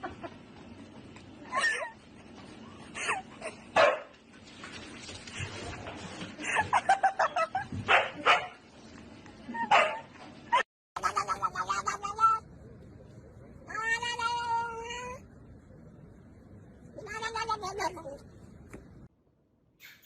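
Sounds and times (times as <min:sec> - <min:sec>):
dog barking and yipping: 0:03.8 - 0:04.1, 0:07.9 - 0:08.6, 0:09.6 - 0:10.6.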